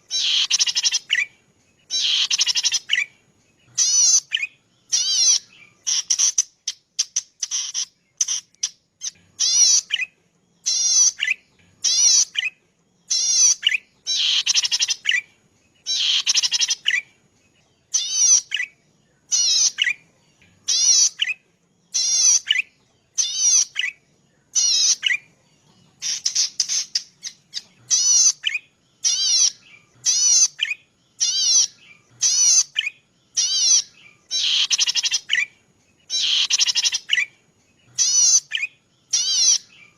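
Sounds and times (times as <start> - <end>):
bird singing buzzy trills: 0.0 - 39.9.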